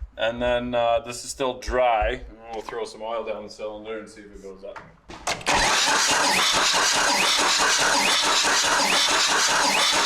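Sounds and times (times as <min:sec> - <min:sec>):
diesel engine cranking on starter: 0:05.3 - 0:10.0.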